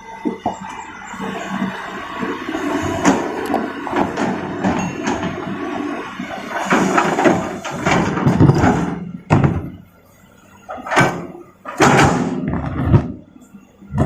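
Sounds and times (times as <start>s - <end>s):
rocks clattering into steel truck bed: 3.9s - 5.6s, 6.3s - 9.8s, 10.7s - 13.2s.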